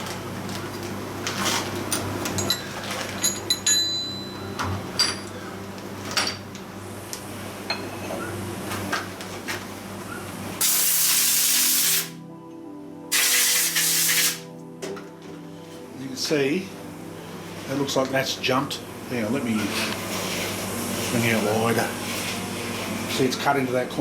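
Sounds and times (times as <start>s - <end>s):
low workshop hum: 0.0s - 24.0s
compressed air blow gun bursts: 13.1s - 14.4s.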